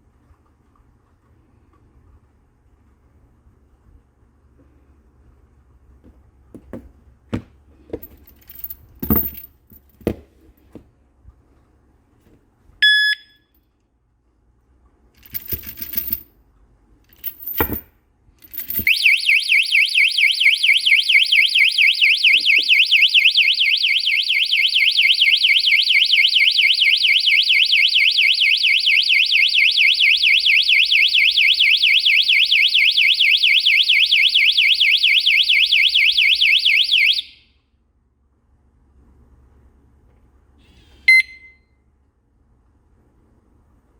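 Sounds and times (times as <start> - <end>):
short beep: 12.8 - 13.4, 41.1 - 41.7.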